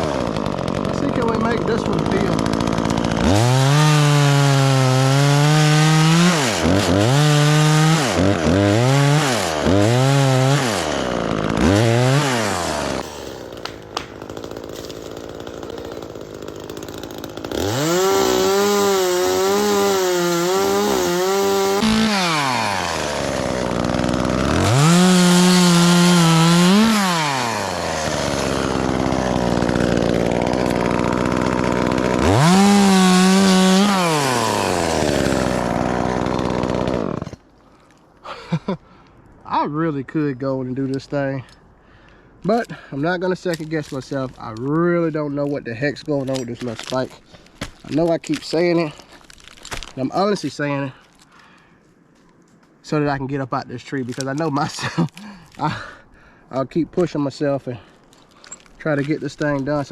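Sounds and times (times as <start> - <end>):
chainsaw revving and idling: 0.0 - 37.4, 54.1 - 56.0.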